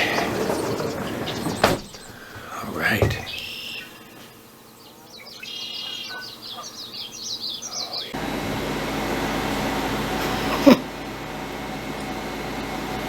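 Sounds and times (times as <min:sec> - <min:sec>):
small bird chirping: 0:00.0 - 0:08.2
steady even hum: 0:00.0 - 0:13.0.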